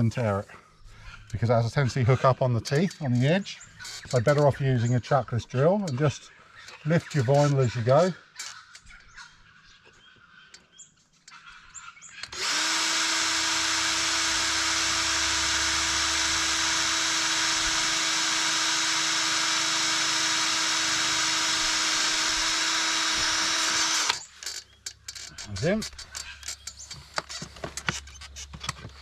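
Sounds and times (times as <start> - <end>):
power drill drilling: 12.2 - 29.0.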